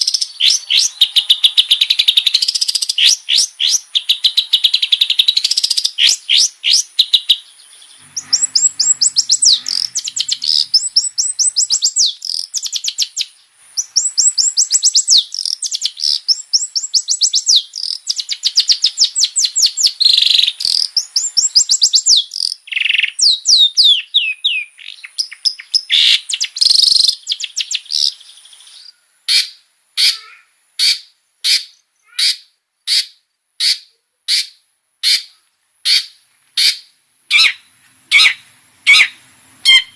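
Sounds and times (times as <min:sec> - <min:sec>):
bird singing chattering trills: 0:00.0 - 0:39.9
bird repeating sharp note: 0:08.0 - 0:12.0.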